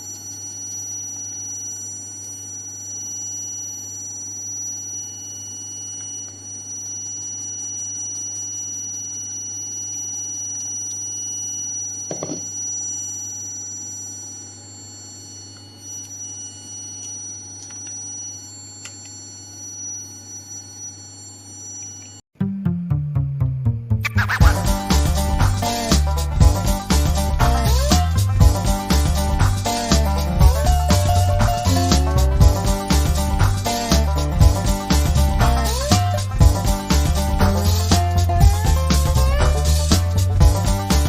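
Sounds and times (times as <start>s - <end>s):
brief knock: 12.1s - 12.4s
high-pitched whines: 24.0s - 41.0s
machine low hum: 24.4s - 41.0s.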